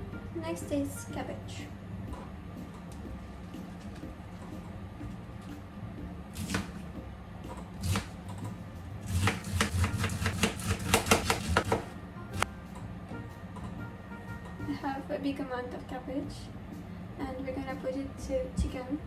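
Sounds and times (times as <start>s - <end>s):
knife chopping on cutting board: 6.4s - 6.8s, 9.1s - 11.9s.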